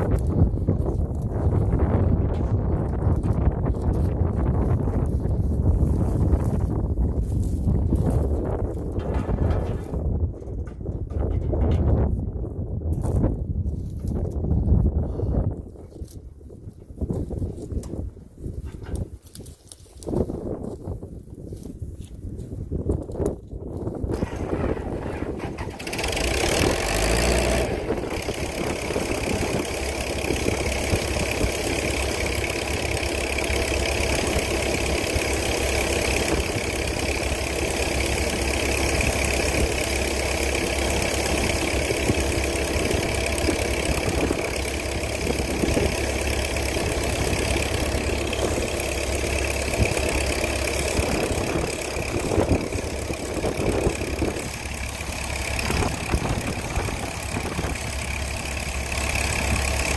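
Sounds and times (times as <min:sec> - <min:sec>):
large engine running: 0:00.0 - 0:15.6, 0:23.7 - 0:59.9.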